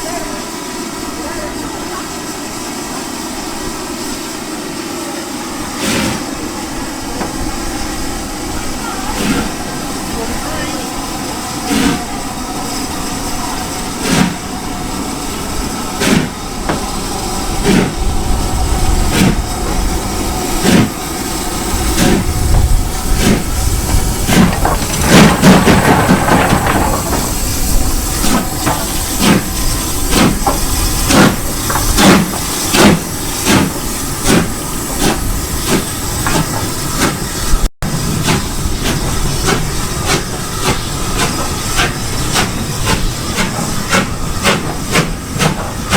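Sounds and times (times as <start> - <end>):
steam hissing: 0.0 - 45.9
steam train knocks: 13.9 - 14.5, 15.2 - 37.3, 37.9 - 45.9.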